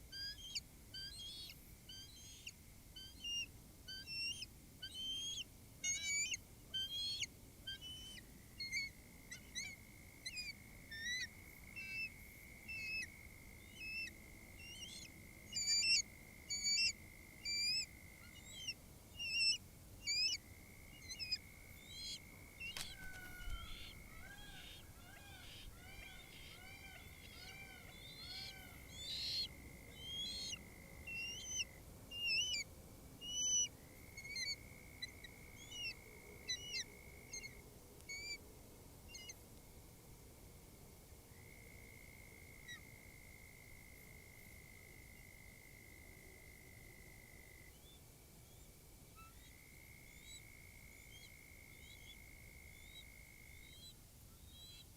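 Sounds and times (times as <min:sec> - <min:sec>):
repeated arched bird calls: 0:21.0 - 0:32.6
birds chirping: 0:22.0 - 0:30.6.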